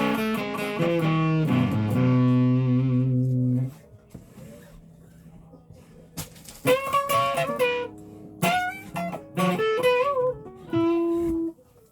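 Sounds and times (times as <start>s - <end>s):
guitar picked notes: 0.0s - 3.9s, 6.6s - 11.6s.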